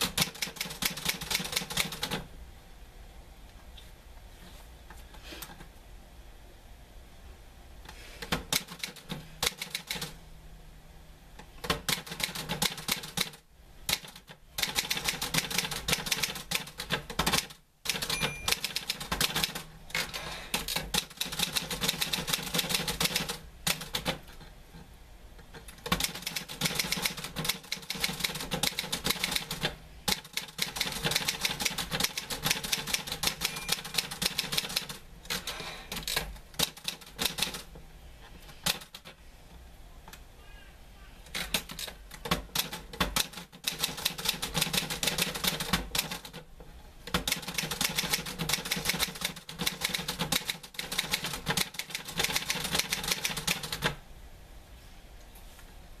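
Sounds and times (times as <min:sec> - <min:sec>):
typewriter keys clacking: 0:00.0 - 0:02.2, 0:08.2 - 0:10.1, 0:11.6 - 0:24.4, 0:25.6 - 0:37.7, 0:41.3 - 0:46.4, 0:47.1 - 0:54.0.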